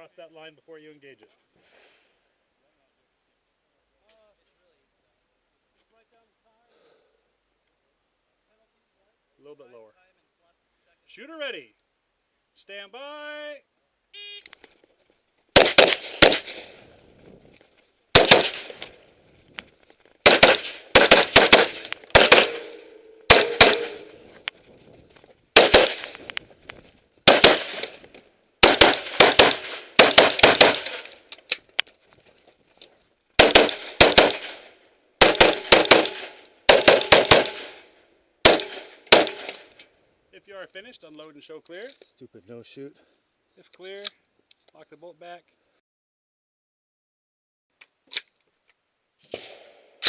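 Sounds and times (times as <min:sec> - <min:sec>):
semi-automatic rifle shots: 0:15.5 - 0:16.8, 0:18.1 - 0:18.9, 0:20.2 - 0:24.2, 0:25.6 - 0:26.2, 0:27.2 - 0:28.0, 0:28.6 - 0:31.2, 0:33.4 - 0:39.8, 0:49.3 - 0:50.0.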